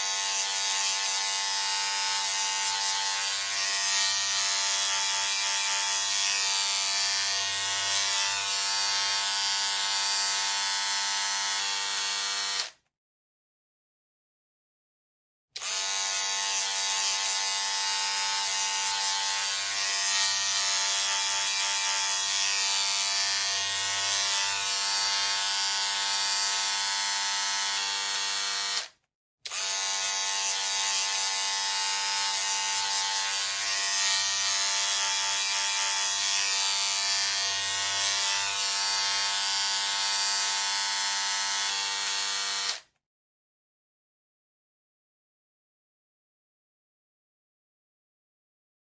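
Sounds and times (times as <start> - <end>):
electric hair clipper buzzing: 0.0 - 12.8, 15.6 - 42.9.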